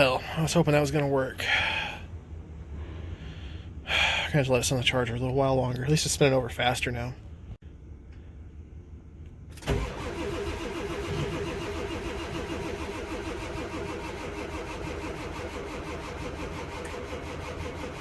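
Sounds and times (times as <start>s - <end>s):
diesel engine cranking: 9.5s - 18.0s.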